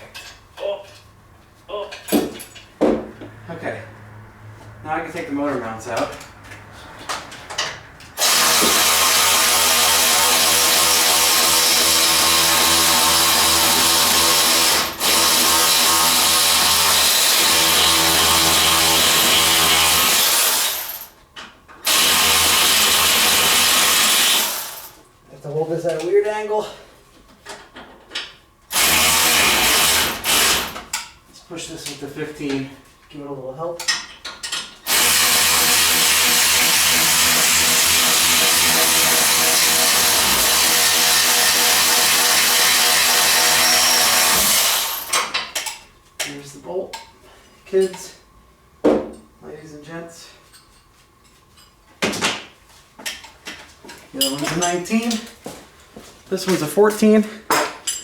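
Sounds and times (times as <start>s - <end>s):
handheld power tool running: 8.2s - 21.2s, 21.8s - 25.0s, 28.7s - 30.8s, 34.9s - 45.3s.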